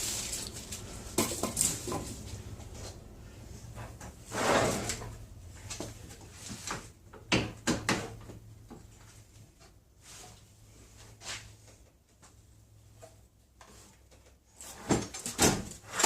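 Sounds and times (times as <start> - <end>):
styrofoam scraping: 0.0 - 1.1.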